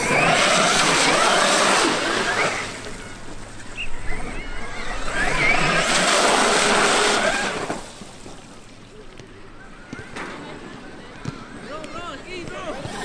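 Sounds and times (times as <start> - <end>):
electric motor whine: 0.0 - 7.9
tyres churning ground: 0.0 - 13.0.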